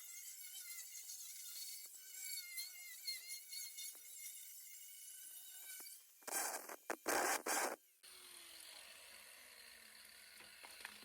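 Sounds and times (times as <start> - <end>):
tool cutting steel bar whine: 0.1 - 7.8.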